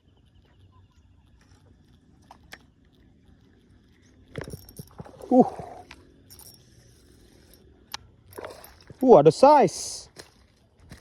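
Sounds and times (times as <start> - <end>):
person exclaiming: 5.2 - 5.8.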